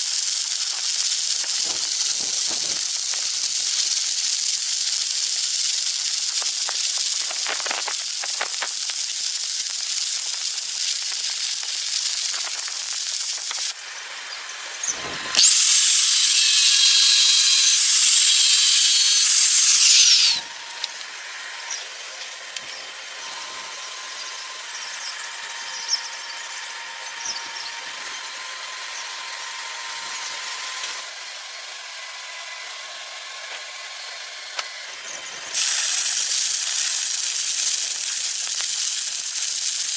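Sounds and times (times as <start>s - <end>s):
arc welding sizzling hiss: 0.0s - 31.2s, 33.4s - 39.9s
high whine: 9.7s - 29.4s.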